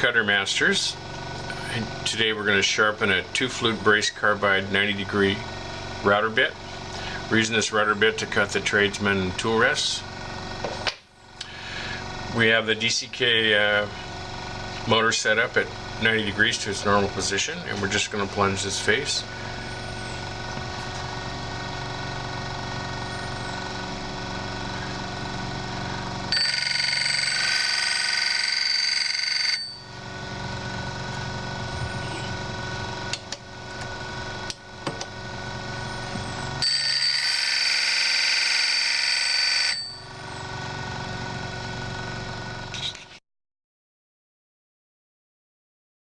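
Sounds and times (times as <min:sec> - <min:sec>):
sharpening machine motor humming: 0:15.8 - 0:43.1
high-pitched grinding: 0:26.3 - 0:29.9, 0:35.8 - 0:40.4.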